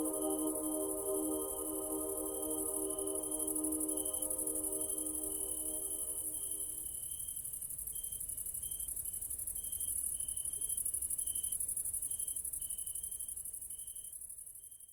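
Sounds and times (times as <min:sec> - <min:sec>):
insects high pulsing buzz: 0:00.0 - 0:06.8.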